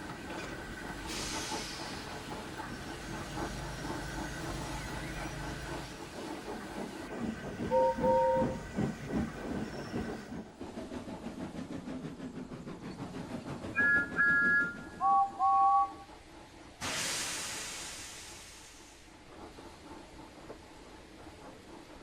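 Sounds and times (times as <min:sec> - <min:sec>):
locomotive chuffing: 0:00.0 - 0:22.0
steam hiss: 0:00.1 - 0:22.0
steam locomotive whistle: 0:07.7 - 0:08.6, 0:13.8 - 0:16.1.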